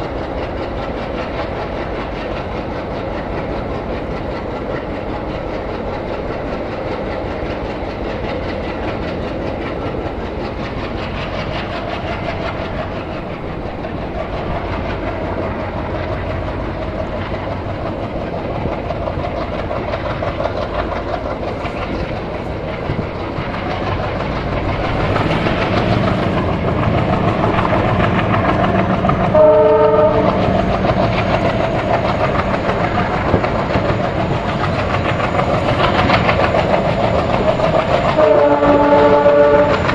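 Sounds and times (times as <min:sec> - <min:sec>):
train rumbling on track: 0:00.0 - 0:39.9
wheels clacking over rail joints: 0:00.0 - 0:39.9
train horn blast: 0:29.3 - 0:30.5, 0:38.1 - 0:39.9.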